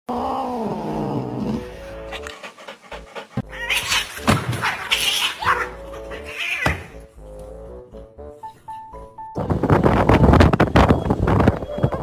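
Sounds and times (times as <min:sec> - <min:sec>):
background music: 0:00.2 - 0:10.4
pet animal crying: 0:03.3 - 0:07.0.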